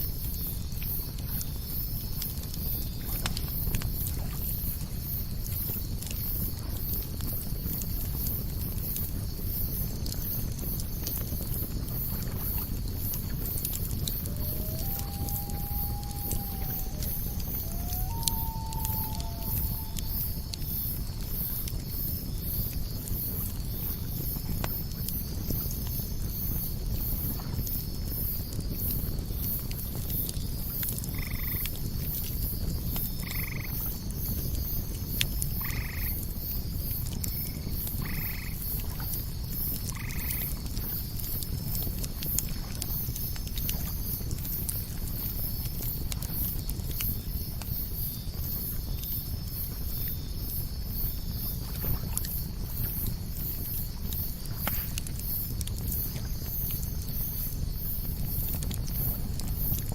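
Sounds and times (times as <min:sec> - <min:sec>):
low rumble of campfire: 0:00.0 - 0:59.9
campfire crackling pops: 0:00.1 - 0:33.2, 0:34.0 - 0:59.9
frog croaking: 0:14.0 - 0:20.6.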